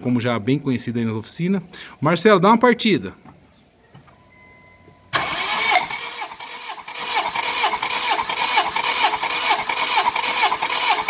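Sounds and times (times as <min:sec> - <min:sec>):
starter motor cranking engine: 0:05.1 - 0:11.0.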